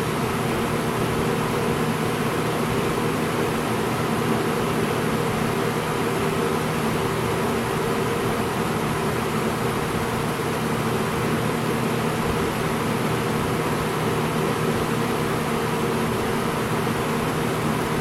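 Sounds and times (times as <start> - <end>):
box fan air rushing: 0.0 - 18.0.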